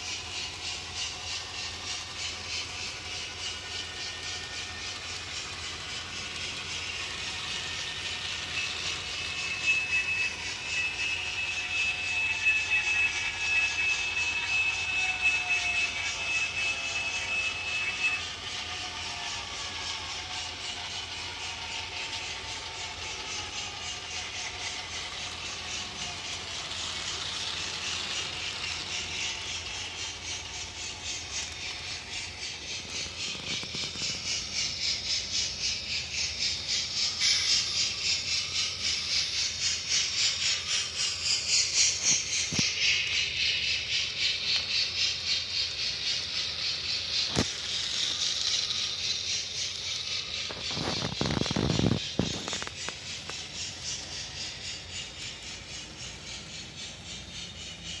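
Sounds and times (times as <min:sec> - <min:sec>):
model train hiss and rattle: 0:00.0 - 0:58.0.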